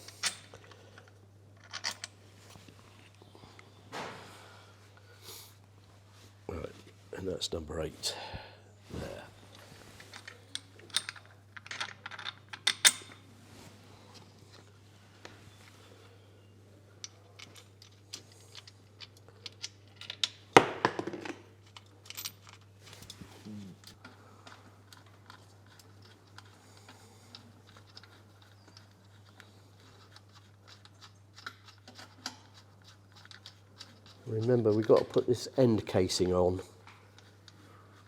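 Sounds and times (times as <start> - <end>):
metal parts clicking and clinking: 0.0 - 2.2, 10.0 - 13.2, 17.0 - 23.2.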